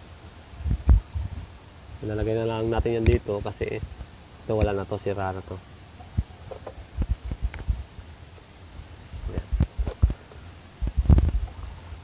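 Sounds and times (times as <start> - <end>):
light knocks taps and clicks: 6.1 - 7.7.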